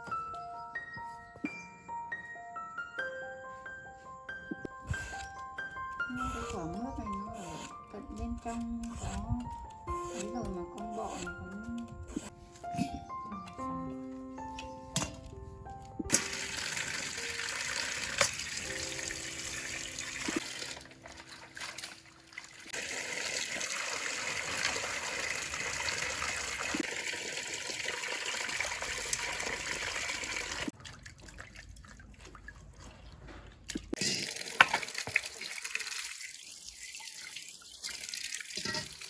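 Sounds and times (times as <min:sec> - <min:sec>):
running water splashing: 0:16.1 - 0:32.8, 0:34.1 - 0:39.0.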